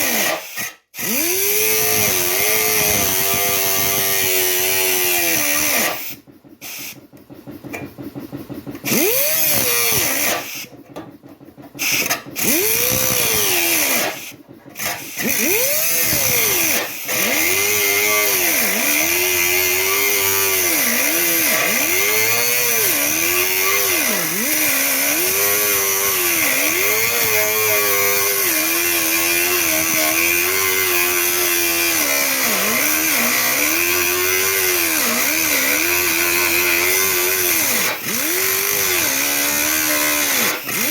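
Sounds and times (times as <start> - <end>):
grinder cutting metal: 0.0 - 7.0, 8.8 - 10.7, 11.8 - 40.9.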